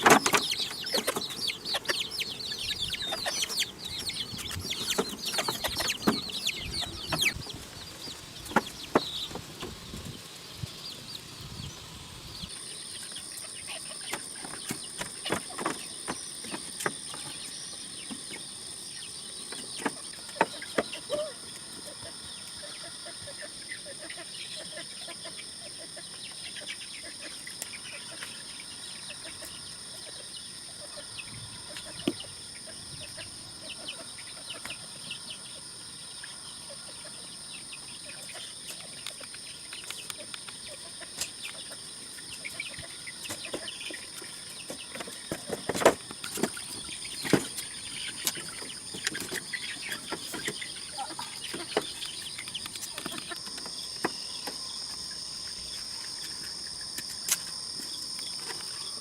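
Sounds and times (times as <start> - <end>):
chickens clucking: 0.0 - 11.4, 12.4 - 59.0
high-pitched insect drone: 46.3 - 59.0.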